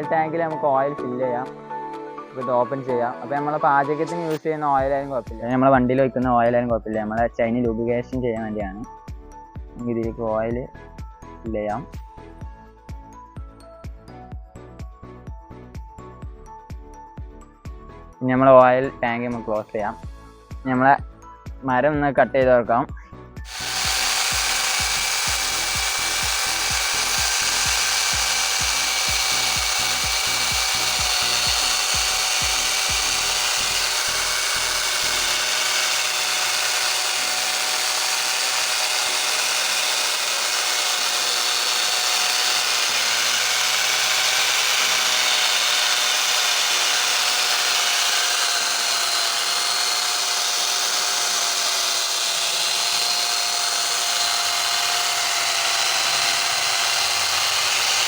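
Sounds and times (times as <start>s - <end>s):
power saw cutting wood: 23.4s - 58.0s
low fast pulsing: 23.5s - 58.0s.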